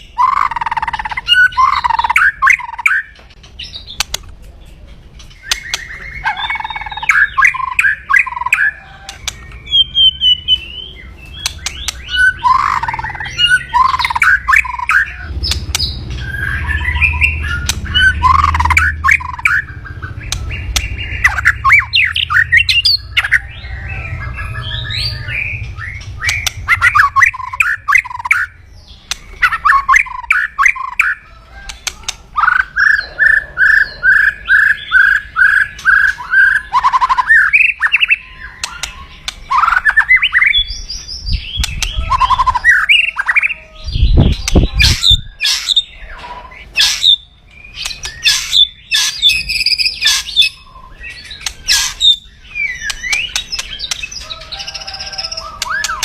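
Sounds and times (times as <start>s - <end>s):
bird song phrases: 0.0s - 56.0s
bird giving harsh rattling calls: 11.3s - 40.4s, 44.1s - 56.0s.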